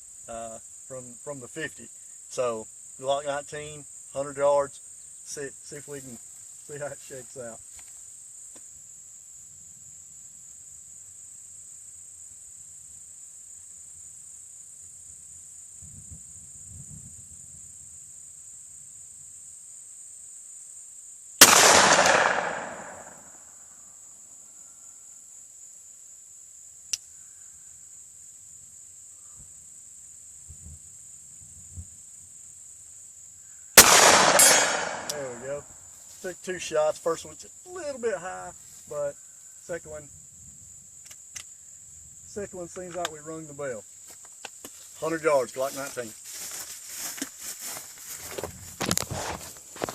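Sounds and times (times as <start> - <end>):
insects chirring: 0.0 - 49.9
pistol shot: 21.4 - 23.3, 33.8 - 35.4
faint click: 26.9 - 27.1.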